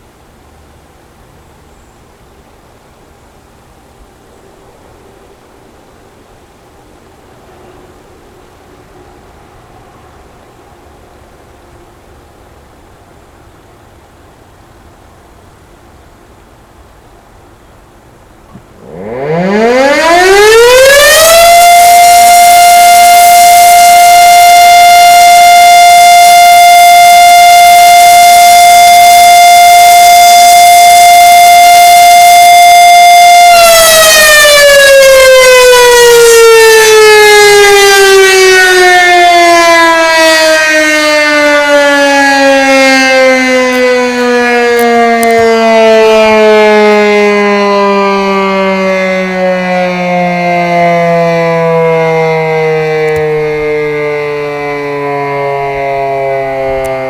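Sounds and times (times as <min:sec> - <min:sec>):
warning siren: 0:18.3 - 0:57.0.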